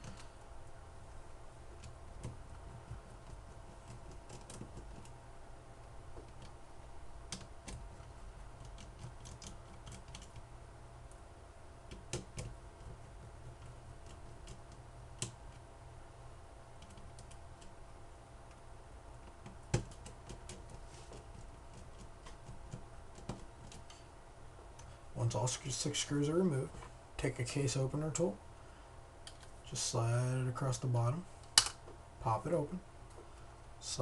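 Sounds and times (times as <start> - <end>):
faint low hum: 0.0 - 34.0.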